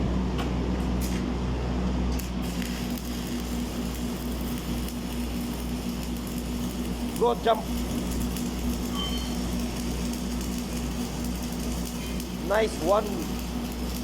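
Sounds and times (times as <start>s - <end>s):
low steady hum: 0.0s - 14.0s
arc welding sizzling crackle: 2.1s - 14.0s.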